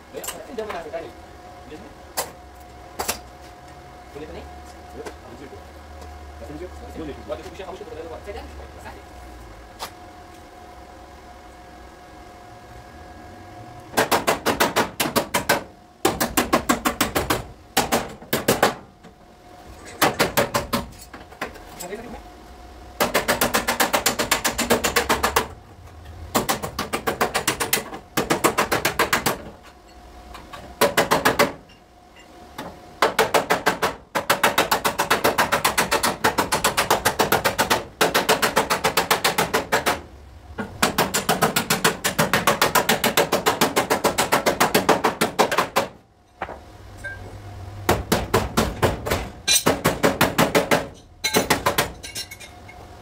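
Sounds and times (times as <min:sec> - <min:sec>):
rapid hammering on sheet metal: 0:14.0 - 0:18.9, 0:20.0 - 0:20.9, 0:23.0 - 0:25.6, 0:26.3 - 0:29.5, 0:30.8 - 0:31.6, 0:33.0 - 0:40.1, 0:40.8 - 0:46.0, 0:47.9 - 0:52.0.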